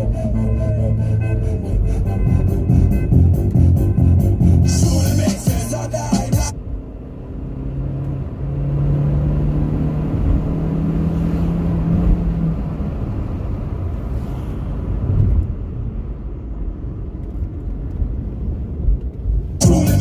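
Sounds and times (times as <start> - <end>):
low rumble: 0.0 - 7.4, 12.0 - 20.0
car engine running: 0.0 - 20.0.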